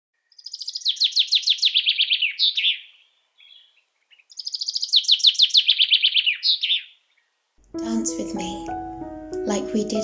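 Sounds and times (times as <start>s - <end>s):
songbird trilling: 0.3s - 7.0s.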